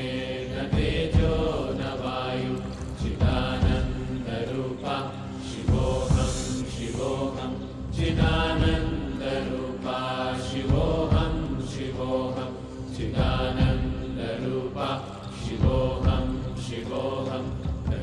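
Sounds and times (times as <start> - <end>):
steady low drone: 0.0 - 18.0
voices chanting: 0.0 - 18.0.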